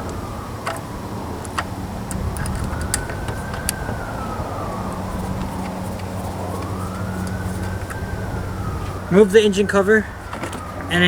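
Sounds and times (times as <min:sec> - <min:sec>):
sharp clicks: 0:00.0 - 0:04.3
low hum: 0:00.0 - 0:11.0
siren wailing: 0:00.0 - 0:11.0.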